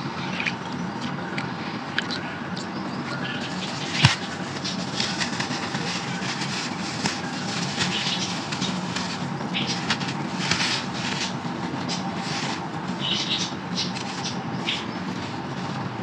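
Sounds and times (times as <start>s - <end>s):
sand and clay crumbling in a pot: 3.5s - 12.8s.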